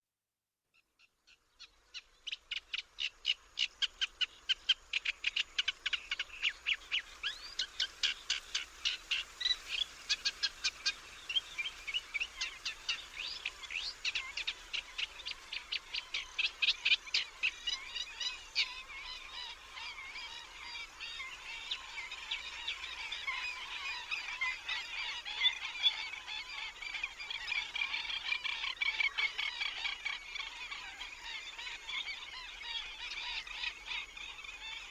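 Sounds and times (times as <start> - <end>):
chorus of wetland bird calls: 1.3 - 34.9.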